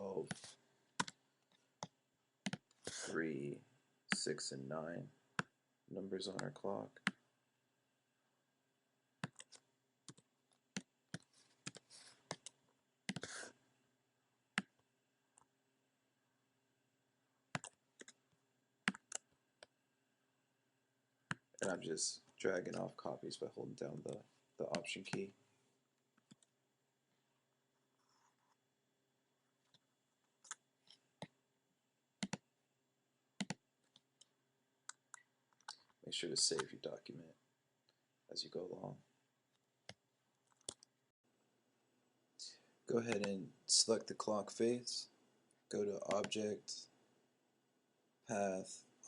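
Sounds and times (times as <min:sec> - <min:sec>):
keyboard and mouse clicking: 0:17.6 - 0:18.2, 0:32.2 - 0:32.4, 0:33.4 - 0:34.0, 0:43.1 - 0:43.4.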